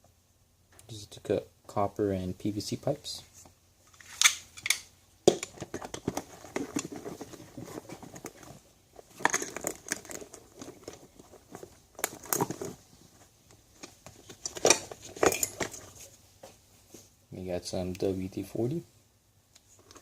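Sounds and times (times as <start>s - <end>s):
bag rustling: 5.6s - 16.2s
metal tools clinking: 14.4s - 16.0s.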